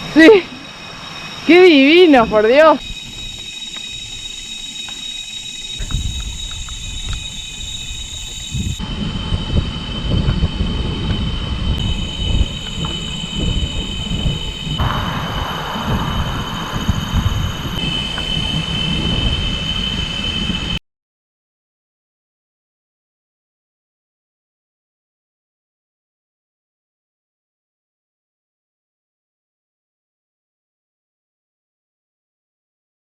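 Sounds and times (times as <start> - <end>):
cicadas droning: 0.0 - 20.8
low rumble: 0.0 - 20.8.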